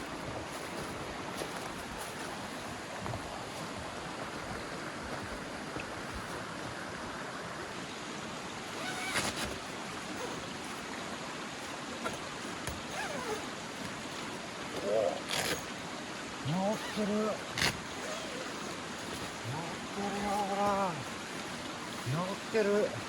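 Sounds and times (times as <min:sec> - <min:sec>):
loud rustle: 0:08.6 - 0:23.0.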